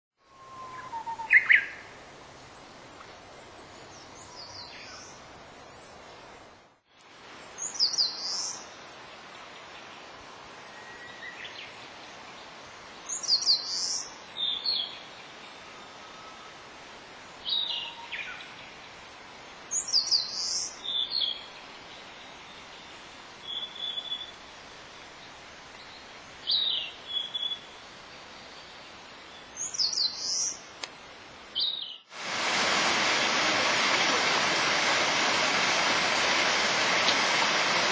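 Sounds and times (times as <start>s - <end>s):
faint hiss: 0.2s - 37.9s
songbirds singing: 0.3s - 1.9s, 3.6s - 5.2s, 7.4s - 10.1s, 10.7s - 16.5s, 17.3s - 32.1s.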